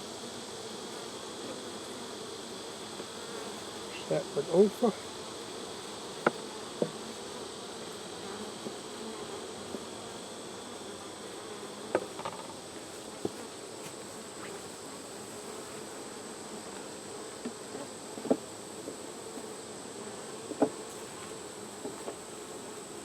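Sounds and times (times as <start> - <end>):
honeybees buzzing: 0.0 - 23.0
hive frames knocking: 6.2 - 7.1, 11.9 - 12.6.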